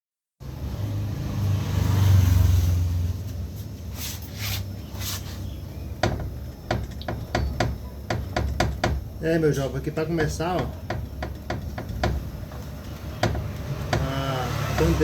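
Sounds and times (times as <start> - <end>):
low mechanical hum: 2.6 - 15.0
suspension parts clunking: 5.6 - 15.0.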